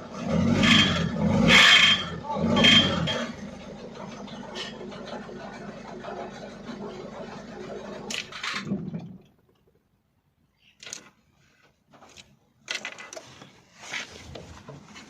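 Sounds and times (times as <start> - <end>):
diesel engine idling: 0.0 - 8.1.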